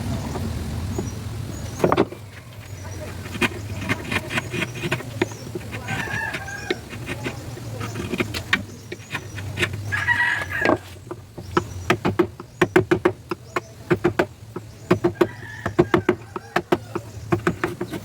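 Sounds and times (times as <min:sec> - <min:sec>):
chicken clucking: 0:02.2 - 0:11.0
mallet striking a chisel: 0:10.4 - 0:18.0.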